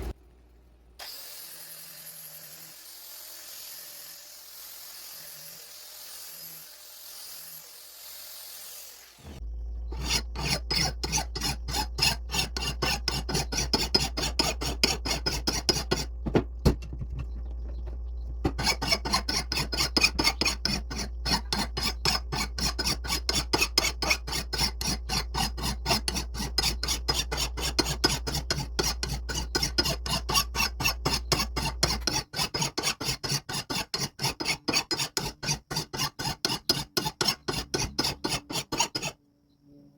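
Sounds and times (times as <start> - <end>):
low steady hum: 9.3 - 23.1
hand rasp on wood: 9.9 - 16.1, 18.5 - 39.2.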